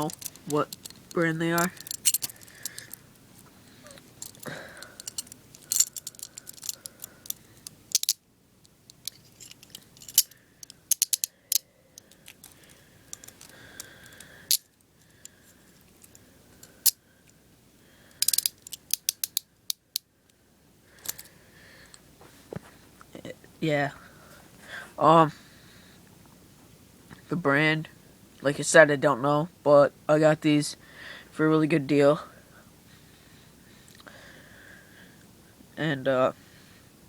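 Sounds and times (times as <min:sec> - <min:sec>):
metal handcuffs clicking and rattling: 0:00.0 - 0:03.2, 0:03.8 - 0:14.7, 0:18.1 - 0:20.0, 0:21.0 - 0:21.3.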